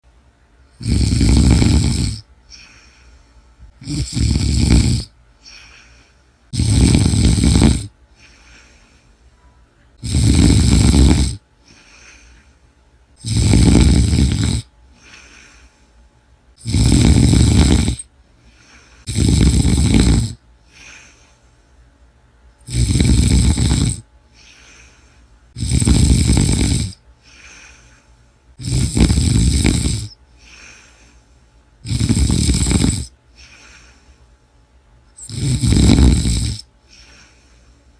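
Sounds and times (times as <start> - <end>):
person snoring loudly: 0.8 - 3.0, 3.8 - 8.8, 10.0 - 12.3, 13.2 - 15.6, 16.6 - 18.1, 19.0 - 21.1, 22.7 - 25.0, 25.6 - 27.9, 28.6 - 31.1, 31.8 - 33.9, 35.2 - 37.4
soft breathing: 1.5 - 22.1, 22.9 - 34.6, 35.8 - 37.9.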